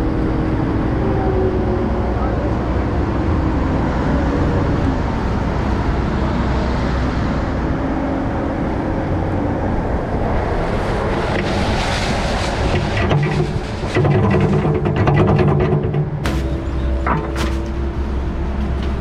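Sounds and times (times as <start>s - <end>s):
diesel engine running: 12.7s - 19.0s.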